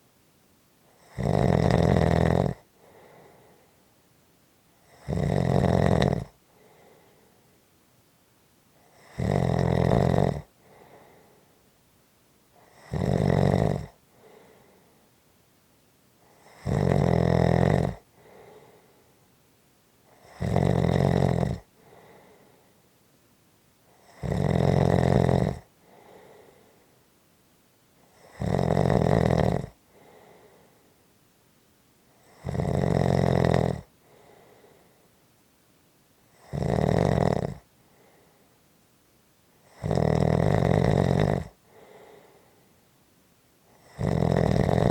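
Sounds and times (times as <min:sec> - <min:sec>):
person snoring: 0:01.0 - 0:03.6, 0:04.9 - 0:07.2, 0:08.9 - 0:11.4, 0:12.6 - 0:14.8, 0:16.3 - 0:18.8, 0:20.1 - 0:22.6, 0:24.0 - 0:26.7, 0:28.2 - 0:30.7, 0:32.2 - 0:34.9, 0:36.3 - 0:38.3, 0:39.6 - 0:42.5, 0:43.8 - 0:44.9
faint breath: 0:02.7 - 0:04.0, 0:06.4 - 0:07.8, 0:10.5 - 0:11.7, 0:13.9 - 0:15.3, 0:18.0 - 0:19.4, 0:21.7 - 0:23.0, 0:25.7 - 0:27.2, 0:29.8 - 0:31.1, 0:34.0 - 0:35.3, 0:37.8 - 0:38.7, 0:41.6 - 0:43.0.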